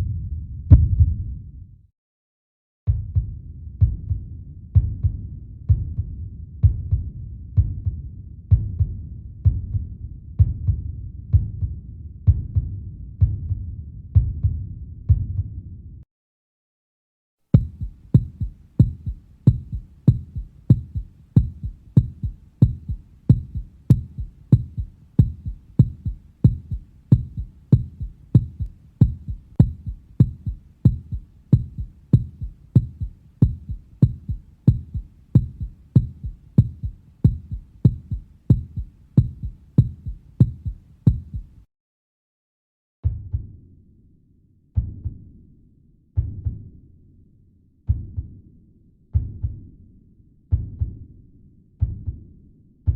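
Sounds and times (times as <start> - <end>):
heartbeat low thuds: 0.0 - 1.4, 2.9 - 11.7, 17.6 - 41.6, 46.2 - 46.6, 50.5 - 51.0, 51.8 - 52.2.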